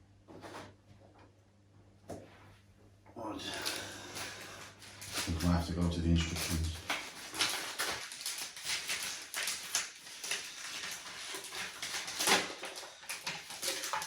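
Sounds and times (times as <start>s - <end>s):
paper leaflet rustling: 3.6s - 14.0s.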